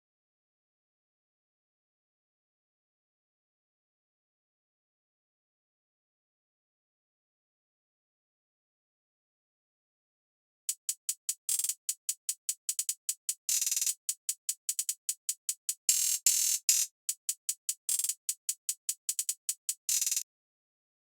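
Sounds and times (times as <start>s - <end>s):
drum machine hi-hat ticks: 10.7s - 20.2s.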